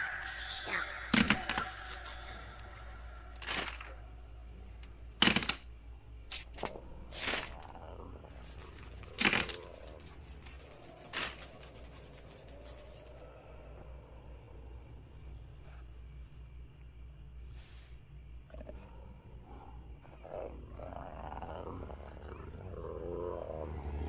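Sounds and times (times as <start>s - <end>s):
sharp cracks and clicks: 5.2s - 5.7s.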